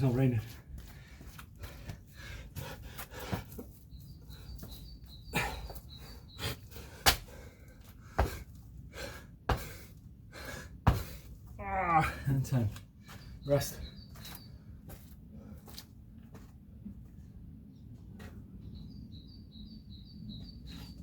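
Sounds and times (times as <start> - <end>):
bird chirping: 3.3 - 7.0, 12.4 - 15.0, 18.6 - 21.0
thumps of exercise jumps: 8.2 - 8.4, 10.9 - 11.2.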